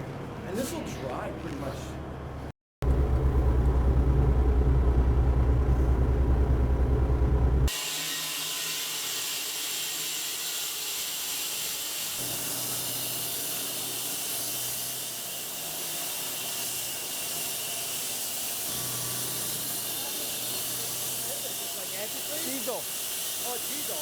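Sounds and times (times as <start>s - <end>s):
low engine rumble: 0.4s - 7.7s.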